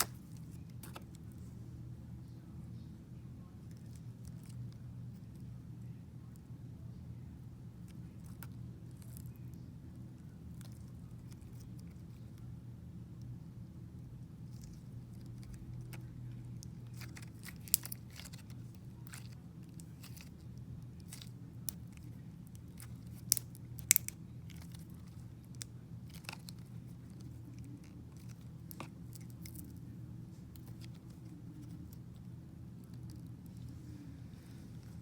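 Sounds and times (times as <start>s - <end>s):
slime crackling and popping: 0.0s - 0.4s, 16.6s - 20.3s, 22.6s - 26.6s
steady low hum: 0.0s - 35.0s.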